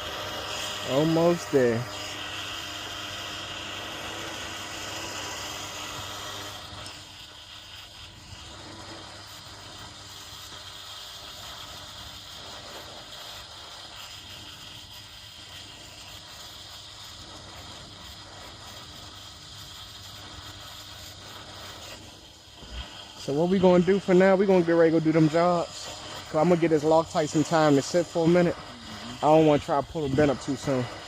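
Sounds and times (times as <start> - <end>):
winch motor humming: 0.0 - 10.6, 20.0 - 31.0.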